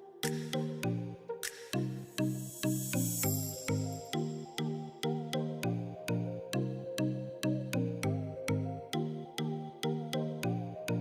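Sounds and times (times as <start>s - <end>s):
music with beat and bass: 0.2s - 4.5s.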